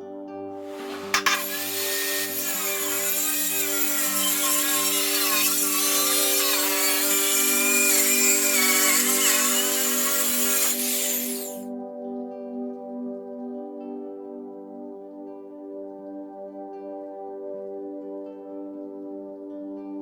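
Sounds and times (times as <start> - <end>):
background music: 0.0 - 20.0
power saw cutting wood: 0.7 - 11.7.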